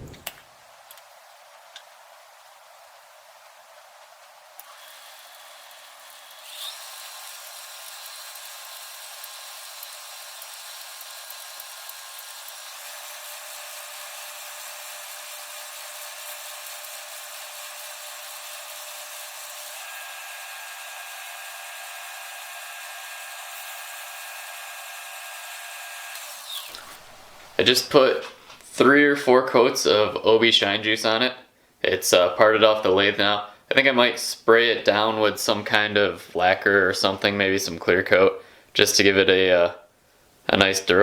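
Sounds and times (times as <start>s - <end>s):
wood lathe motor whine: 4.6s - 27.6s.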